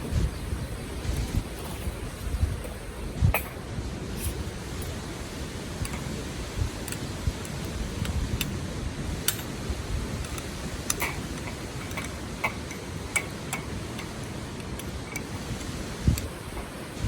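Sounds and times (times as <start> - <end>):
low outdoor rush: 0.0 - 17.0
wood fire crackling: 4.1 - 17.0.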